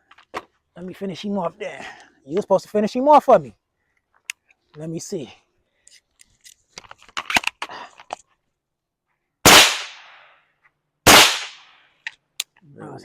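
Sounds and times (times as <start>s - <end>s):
suppressed gunshots: 9.4s - 10.2s, 11.1s - 11.7s.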